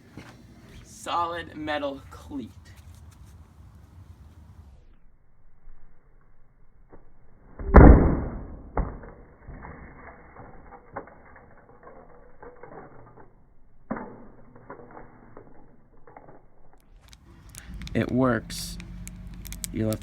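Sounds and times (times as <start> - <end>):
phone rattling and clicking: 14.6 - 20.0.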